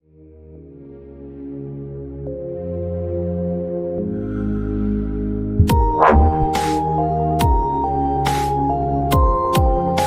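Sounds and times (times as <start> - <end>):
electronic music with a beat: 5.6 - 6.6.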